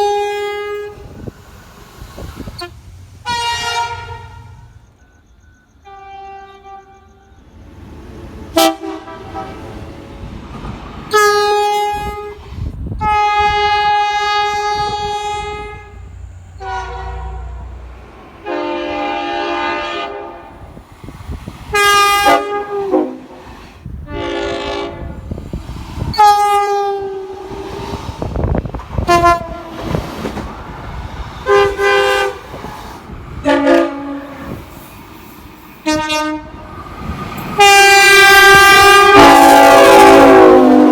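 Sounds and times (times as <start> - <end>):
train horns blasting: 0.0 - 1.3, 2.5 - 4.8, 5.7 - 7.6, 8.5 - 10.0, 11.1 - 20.8, 21.7 - 25.4, 26.1 - 28.0, 28.9 - 30.0, 31.4 - 32.7, 33.3 - 34.7, 35.8 - 36.6, 37.6 - 40.9.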